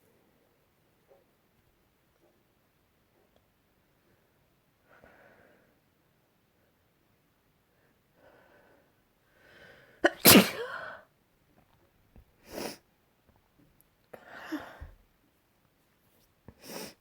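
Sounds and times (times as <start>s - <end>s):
person breathing: 7.8s - 10.0s
person sneezing: 10.0s - 11.0s.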